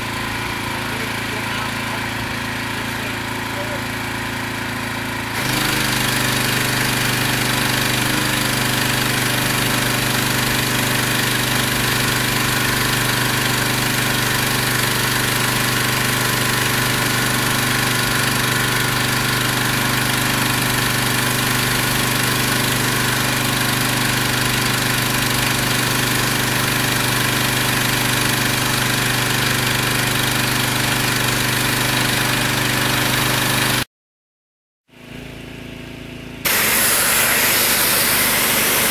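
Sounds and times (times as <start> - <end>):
pressure washer hum: 0.0 - 33.8, 36.4 - 38.9
high-pressure water spraying: 5.3 - 30.0, 36.4 - 38.9.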